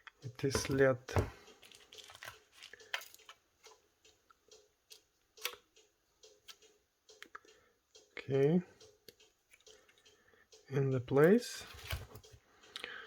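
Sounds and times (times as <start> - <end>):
small parts clicking and tapping: 0.0 - 8.1.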